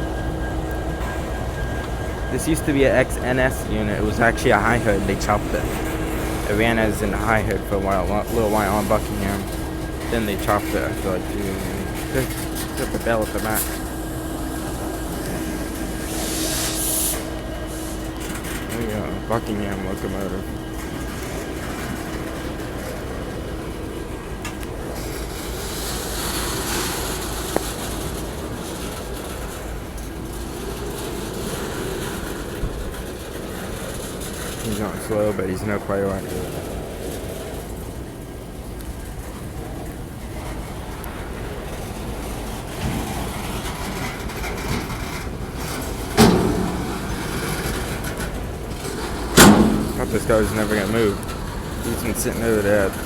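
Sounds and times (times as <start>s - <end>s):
freight train rumbling past: 0.0s - 53.0s
loud metal clank: 45.8s - 51.3s.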